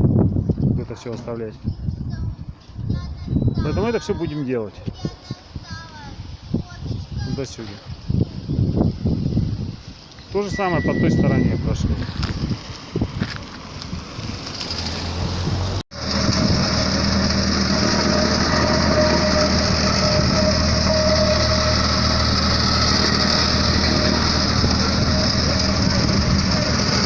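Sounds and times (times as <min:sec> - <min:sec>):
machinery engine running: 0:10.4 - 0:27.0.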